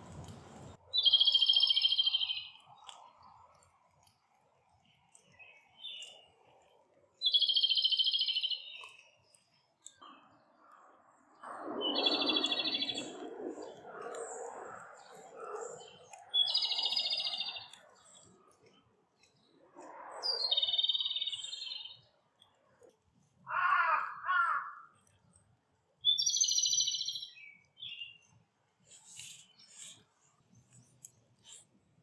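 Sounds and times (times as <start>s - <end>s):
bird trilling: 1.0s - 2.5s, 11.8s - 13.2s, 26.1s - 27.3s
short low bird calls: 23.5s - 24.9s.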